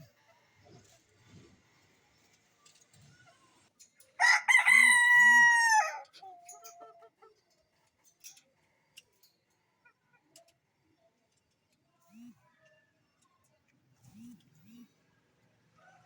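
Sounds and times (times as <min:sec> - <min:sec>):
rooster crowing: 0:04.2 - 0:06.1.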